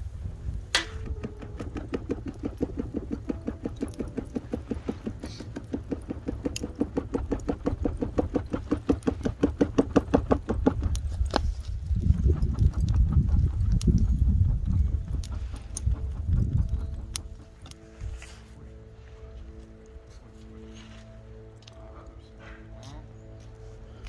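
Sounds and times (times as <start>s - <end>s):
hand fan flapping: 0.0s - 18.6s.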